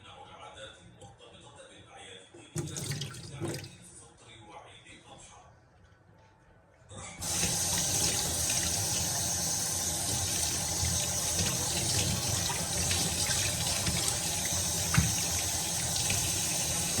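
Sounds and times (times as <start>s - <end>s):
running water from a tap: 2.6s - 3.8s, 7.2s - 17.0s.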